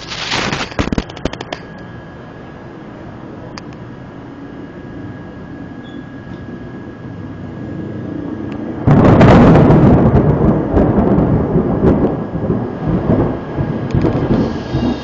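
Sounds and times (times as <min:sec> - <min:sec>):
thunder crack and rumble: 0:00.0 - 0:02.0, 0:06.4 - 0:15.0.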